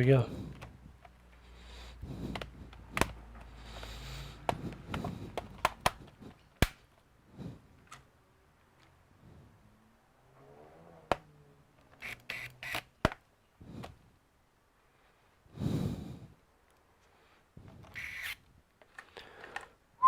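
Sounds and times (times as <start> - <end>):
laptop parts clicking and clattering: 2.2 - 7.0, 11.1 - 14.0.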